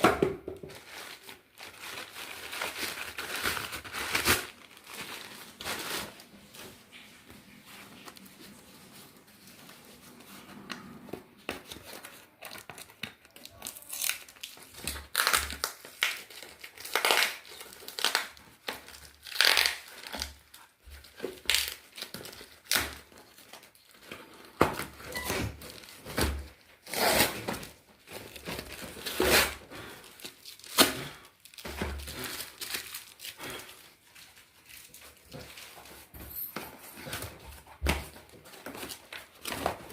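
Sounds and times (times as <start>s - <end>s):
packaging crinkling and tearing: 0.7s - 6.7s, 11.4s - 36.5s.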